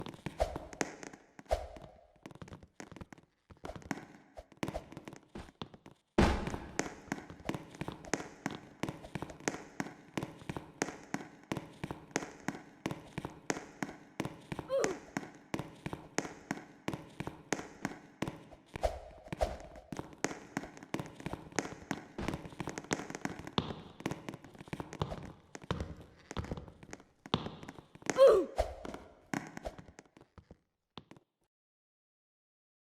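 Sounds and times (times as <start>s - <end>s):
heavy thumps: 6.2s - 7.1s.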